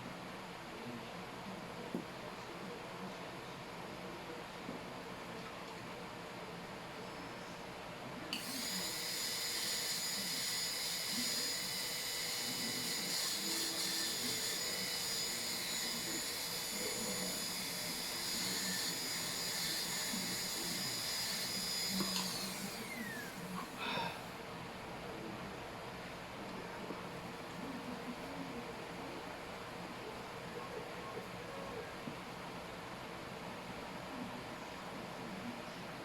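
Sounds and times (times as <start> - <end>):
dental drill whining: 8.4 - 24.2.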